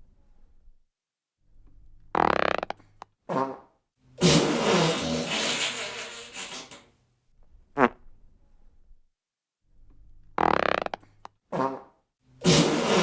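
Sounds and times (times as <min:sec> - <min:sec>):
farting: 0:02.1 - 0:06.8, 0:07.8 - 0:08.1, 0:10.4 - 0:13.0.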